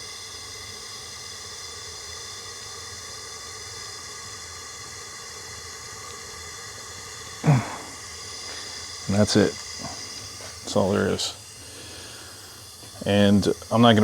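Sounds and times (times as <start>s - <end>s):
steady background hiss: 5.2s - 14.0s
faint hum: 5.8s - 14.0s.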